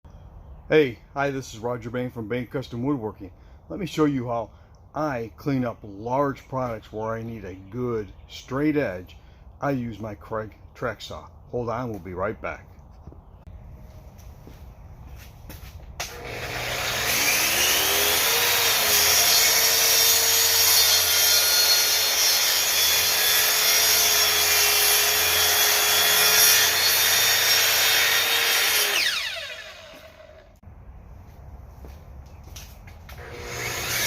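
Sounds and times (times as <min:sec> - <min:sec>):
saw motor winding down: 0:16.0 - 0:30.6, 0:33.2 - 0:34.0
track saw cutting wood: 0:16.0 - 0:30.6, 0:33.1 - 0:34.0.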